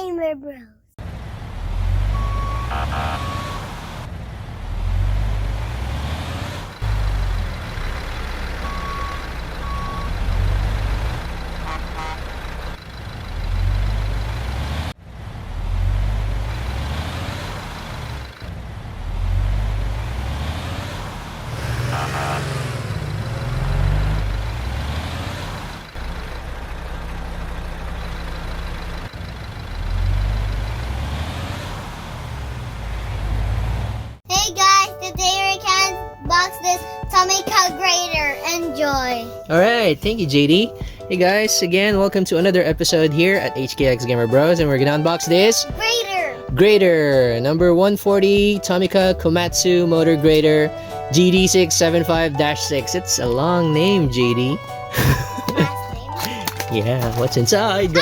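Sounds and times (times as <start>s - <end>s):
diesel machinery rumbling: 1.0s - 58.0s
short electronic beeps: 2.2s - 3.7s, 8.6s - 10.4s.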